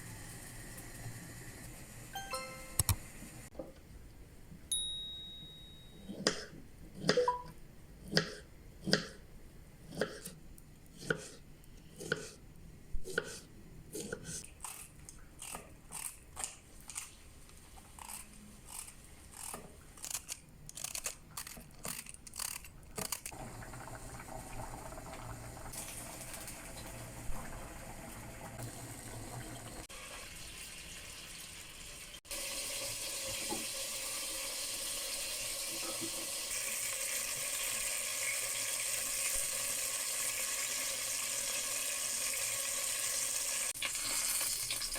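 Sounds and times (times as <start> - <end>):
food sizzling in a pan: 29.9 - 44.9.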